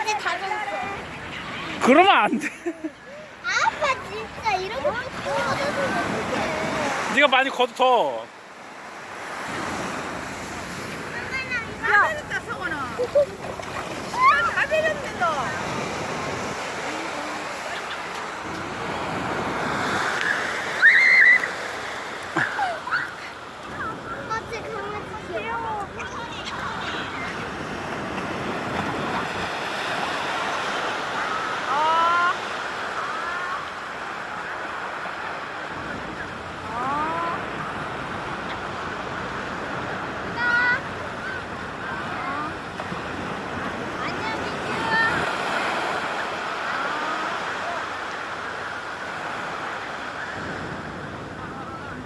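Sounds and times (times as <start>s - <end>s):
sea surf washing onto shore: 0.0s - 52.0s
loud high-pitched cry: 20.8s - 21.5s.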